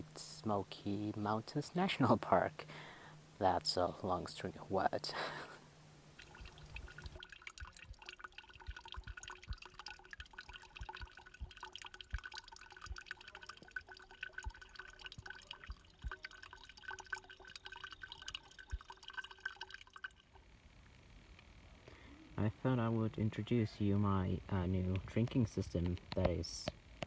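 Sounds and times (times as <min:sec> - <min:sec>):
water dripping: 0:00.0 - 0:20.5.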